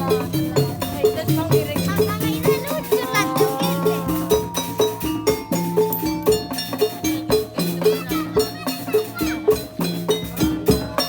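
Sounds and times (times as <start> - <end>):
steady percussion rhythm: 0.0 - 11.0.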